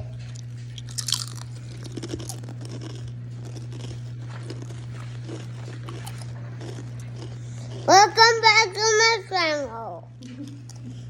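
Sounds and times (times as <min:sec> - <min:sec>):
people crunching potato chips: 0:00.0 - 0:08.6.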